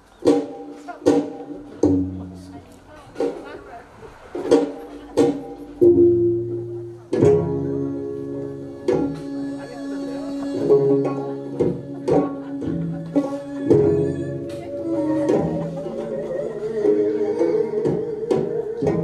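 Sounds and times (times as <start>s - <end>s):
long held string notes: 4.1s - 19.0s.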